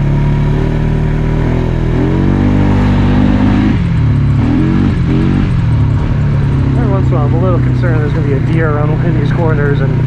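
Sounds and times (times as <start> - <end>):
atv engine revving: 0.0 - 10.0.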